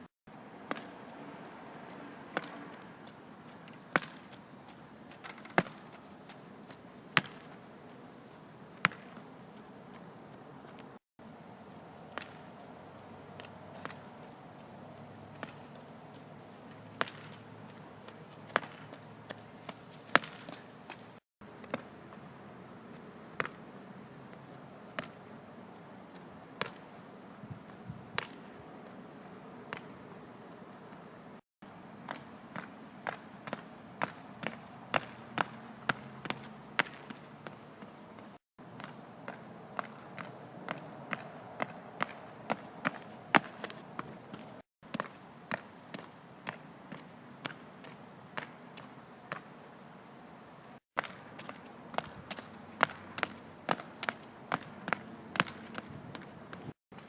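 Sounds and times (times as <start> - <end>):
faint outdoor background: 0.0 - 57.0.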